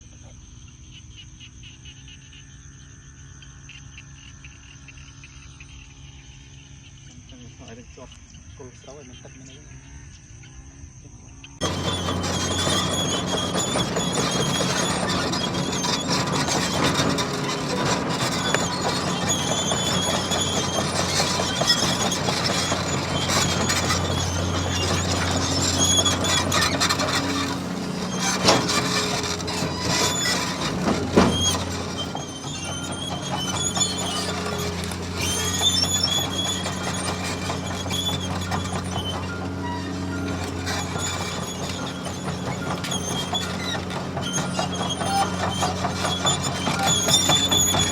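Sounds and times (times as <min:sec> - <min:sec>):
high wavering mechanical squeal: 0:11.6 - 0:47.9
toy bulldozer motor humming: 0:11.6 - 0:47.9.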